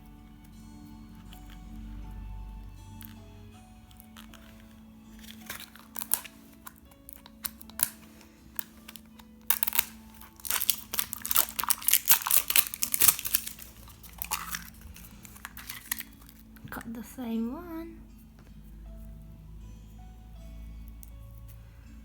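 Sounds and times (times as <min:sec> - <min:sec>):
soft background music: 0:00.0 - 0:22.0
plastic wrapper crinkling and tearing: 0:03.9 - 0:16.5.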